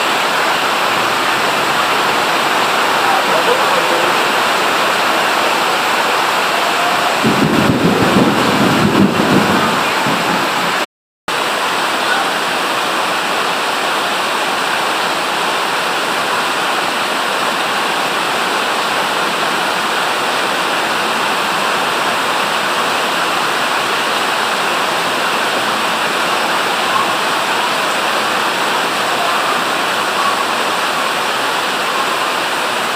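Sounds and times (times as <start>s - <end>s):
low rumble with splashing: 0.0s - 10.8s
heavy rain pouring: 0.0s - 32.9s.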